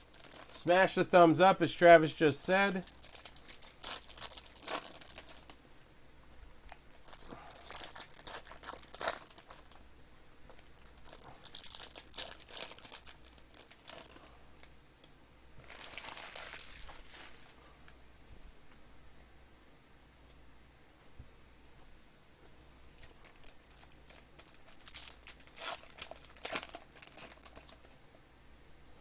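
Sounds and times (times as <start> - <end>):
plastic wrapping crinkling and tearing: 0.0 - 1.0, 2.4 - 5.6, 6.7 - 9.8, 10.5 - 14.7, 15.6 - 17.6, 23.0 - 28.0.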